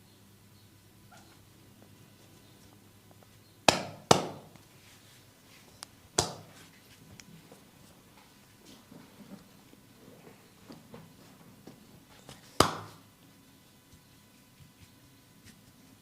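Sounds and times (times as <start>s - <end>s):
sharp snaps of hands on skin: 12.6s - 13.0s.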